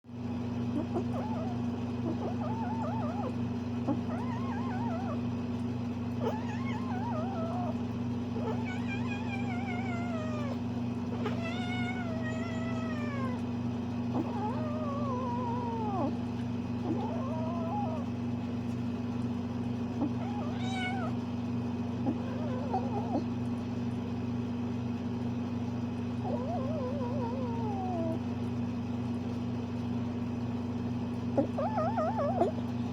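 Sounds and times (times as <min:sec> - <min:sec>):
steady low hum: 0:00.0 - 0:32.9
kitten meowing and chirping: 0:03.9 - 0:05.2, 0:06.2 - 0:07.8, 0:08.4 - 0:10.6, 0:31.4 - 0:32.6.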